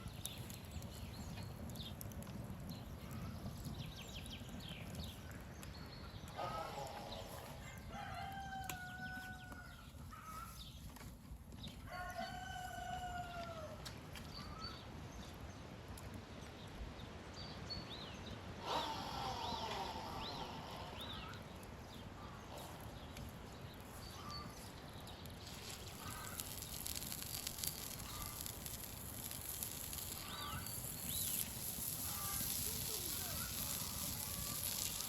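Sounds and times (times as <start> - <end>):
rooster crowing: 6.4 - 9.8, 11.9 - 13.8.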